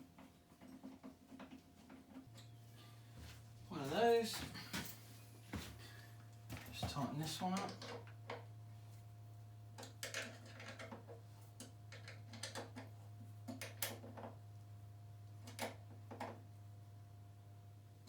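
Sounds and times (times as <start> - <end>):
steady low hum: 2.3 - 9.8.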